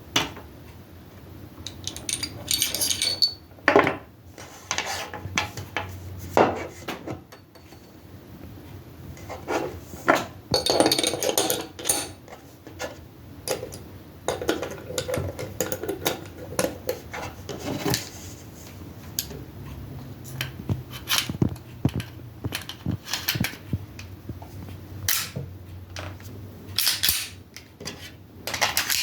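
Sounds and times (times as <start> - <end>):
parts rubbing and sliding: 4.4 - 7.0.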